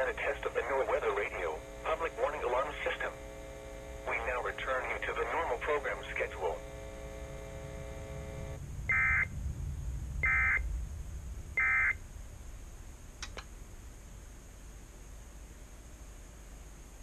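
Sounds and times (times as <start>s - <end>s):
short electronic buzzes: 5.4s - 9.3s
faint clicks: 13.2s - 13.5s.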